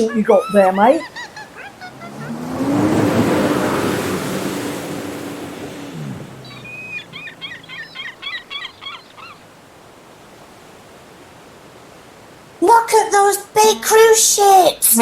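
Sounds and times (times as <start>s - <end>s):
seagulls calling: 0.0s - 11.1s
faint steady hiss: 0.0s - 15.0s.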